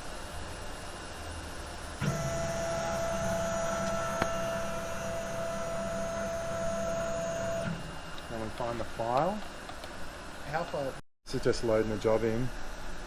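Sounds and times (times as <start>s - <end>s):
low steady hum: 0.0s - 13.0s
stepper motors whining: 2.0s - 8.2s.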